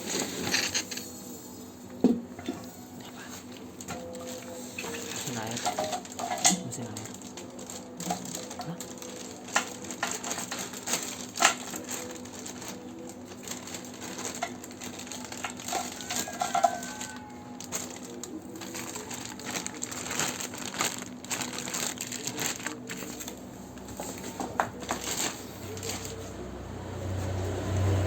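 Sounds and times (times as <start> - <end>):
packaging crinkling: 3.1 - 26.4
clicks and clatter of parts: 4.8 - 8.6.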